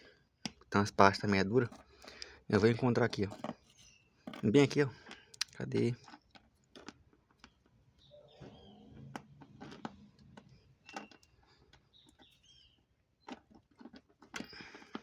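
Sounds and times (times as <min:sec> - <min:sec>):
faint bird chirps: 0:07.5 - 0:09.4, 0:10.0 - 0:12.9.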